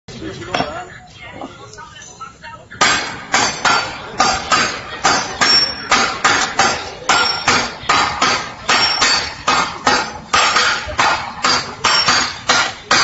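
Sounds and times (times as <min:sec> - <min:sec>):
hammers striking metal on anvil: 0:02.8 - 0:13.0.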